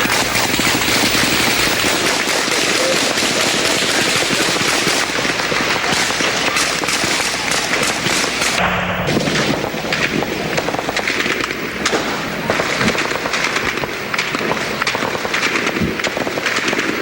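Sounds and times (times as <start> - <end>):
rapid gunfire: 0.0 - 17.0.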